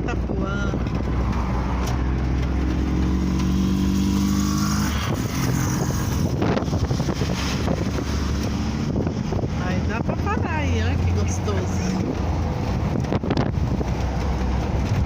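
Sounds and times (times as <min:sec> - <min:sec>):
road and wind noise: 0:00.0 - 0:15.0
vehicle engine: 0:00.0 - 0:15.0.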